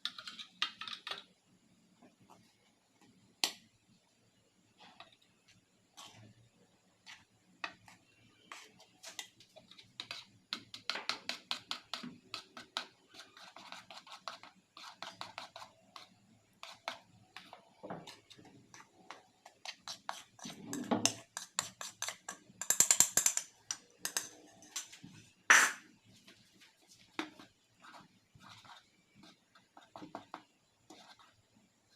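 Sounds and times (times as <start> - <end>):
utensil beating in a mixing bowl: 7.0 - 24.9.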